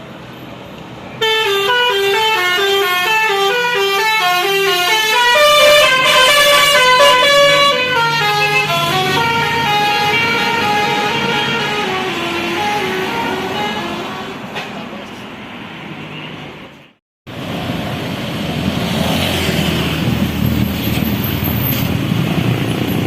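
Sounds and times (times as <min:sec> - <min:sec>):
musical bus horn tune: 0:01.2 - 0:14.7.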